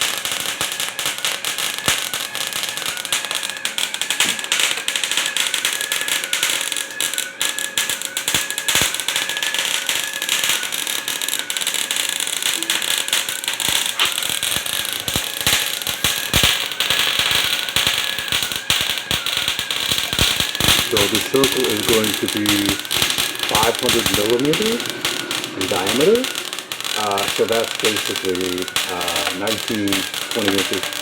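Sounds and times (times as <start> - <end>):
welding arc crackle: 0.0 - 31.0
faint wavering whine: 12.3 - 31.0.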